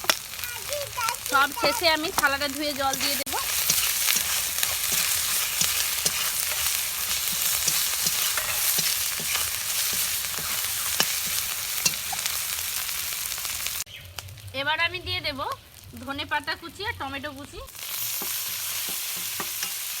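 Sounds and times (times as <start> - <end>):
spices sizzling in hot oil: 0.0 - 20.0
spatula scraping pan: 1.2 - 13.4, 17.8 - 20.0.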